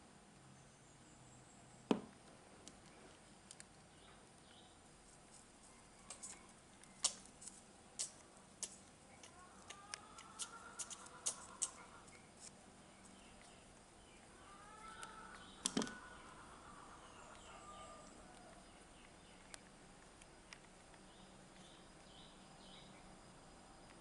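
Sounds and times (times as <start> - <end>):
small sharp clicks: 14.8 - 16.0.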